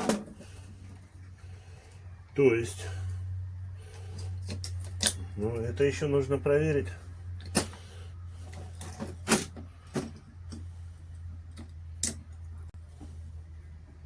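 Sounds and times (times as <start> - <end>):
steady low hum: 0.0 - 14.0
metal parts and tools clicking: 4.2 - 5.4.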